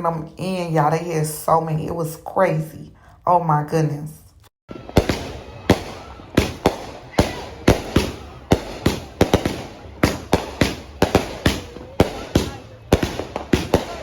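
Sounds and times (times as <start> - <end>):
firework bangs: 4.7 - 14.0.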